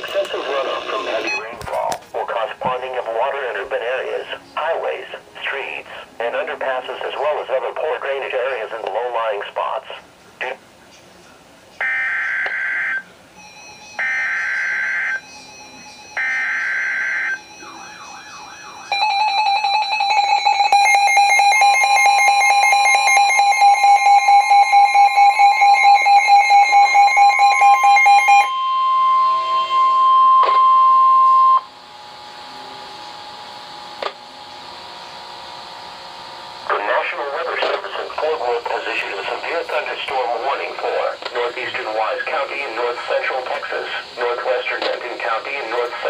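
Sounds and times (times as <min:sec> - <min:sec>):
two-tone attention signal: 0:00.0 - 0:01.5, 0:11.8 - 0:31.8
warbling data tones: 0:11.8 - 0:37.4
single high tone: 0:28.5 - 0:31.7.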